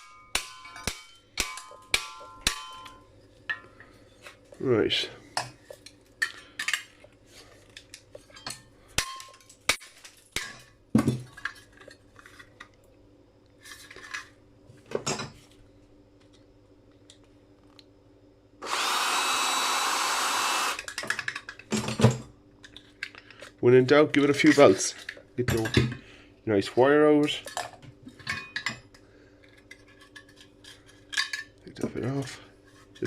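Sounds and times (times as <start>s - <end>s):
handheld power tool running: 18.6s - 20.8s.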